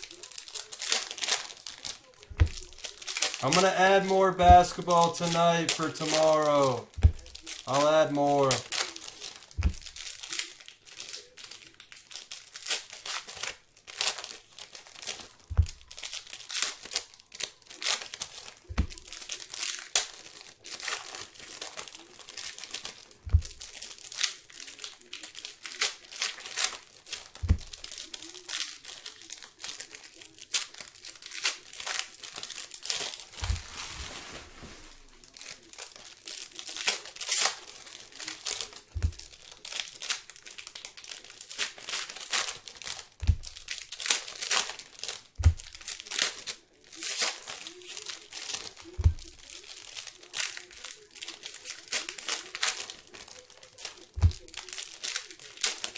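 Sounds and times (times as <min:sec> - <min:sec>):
plastic wrappers crinkling: 0:00.0 - 0:55.9
soft low thumps: 0:02.3 - 0:02.8, 0:06.9 - 0:07.5, 0:09.6 - 0:10.0, 0:15.5 - 0:15.8, 0:27.4 - 0:27.8, 0:33.4 - 0:35.1, 0:39.0 - 0:39.3, 0:43.2 - 0:43.6, 0:45.4 - 0:45.8.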